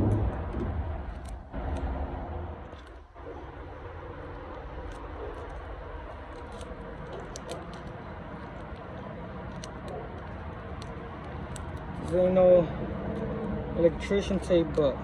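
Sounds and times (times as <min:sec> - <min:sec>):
hands handling plug and tape: 0:00.1 - 0:02.0, 0:02.6 - 0:03.3, 0:04.2 - 0:12.4.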